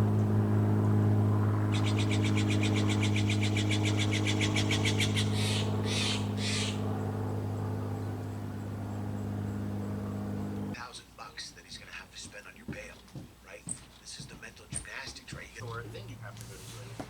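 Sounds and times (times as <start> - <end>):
low engine-like hum: 0.0 - 10.8, 15.4 - 17.0
short raspy bursts: 1.7 - 8.0.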